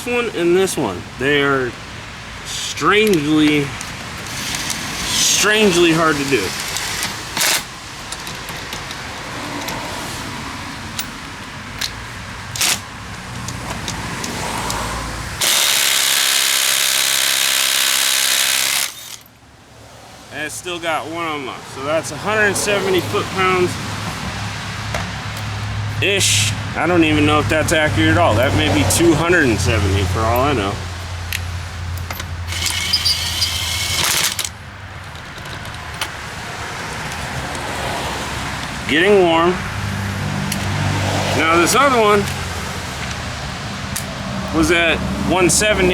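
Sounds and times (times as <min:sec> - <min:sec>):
handling clicks and knocks: 0:02.8 - 0:09.9, 0:10.9 - 0:15.5, 0:30.3 - 0:36.4
impact wrench whine and hammering: 0:04.2 - 0:07.8, 0:15.4 - 0:19.3, 0:32.1 - 0:34.5
impact wrench hammering: 0:15.4 - 0:19.3.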